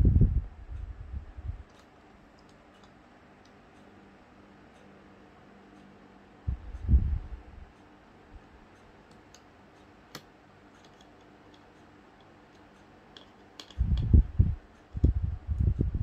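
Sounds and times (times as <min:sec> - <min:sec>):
small clicks of handling laptop parts: 0:10.1 - 0:14.1.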